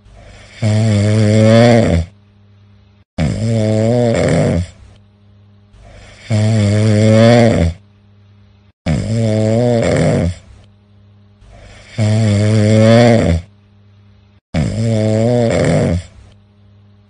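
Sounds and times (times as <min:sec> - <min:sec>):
quiet breathing: 0:00.0 - 0:01.2, 0:04.6 - 0:06.9, 0:07.8 - 0:08.8, 0:11.3 - 0:14.4
person snoring loudly: 0:00.0 - 0:02.2, 0:03.2 - 0:04.9, 0:05.8 - 0:07.8, 0:08.8 - 0:10.6, 0:11.5 - 0:13.5, 0:14.5 - 0:16.3.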